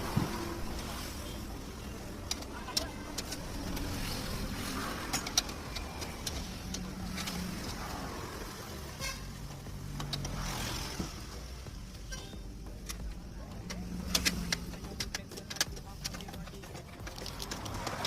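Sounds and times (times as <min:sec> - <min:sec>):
motor vehicles passing: 0:00.0 - 0:18.0
sharp clicks and knocks: 0:04.9 - 0:07.9, 0:09.5 - 0:18.0.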